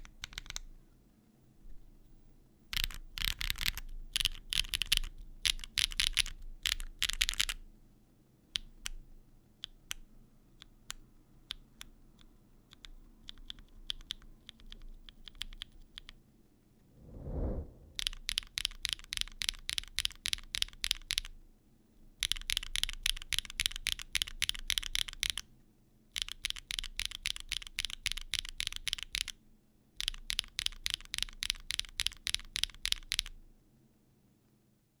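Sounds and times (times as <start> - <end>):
clacky mechanical keyboard typing: 0.0 - 0.6, 2.8 - 7.6, 12.7 - 16.1, 18.0 - 21.3, 22.2 - 25.4, 26.2 - 29.4, 30.0 - 33.4.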